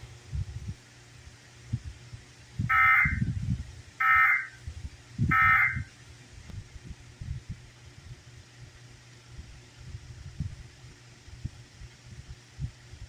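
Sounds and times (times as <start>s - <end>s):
buzzing electronic data bursts: 2.7s - 3.3s, 4.0s - 4.6s, 5.3s - 5.9s.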